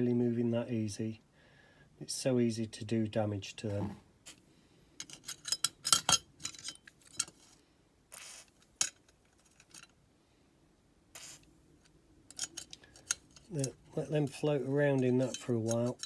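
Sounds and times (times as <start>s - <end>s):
aerosol spray hiss: 8.2s - 8.5s, 11.2s - 11.5s
toy car wheels clinking in container: 12.3s - 13.8s.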